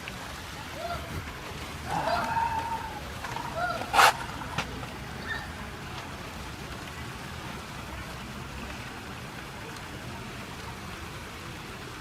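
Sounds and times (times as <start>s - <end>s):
steady background noise: 0.0s - 12.0s.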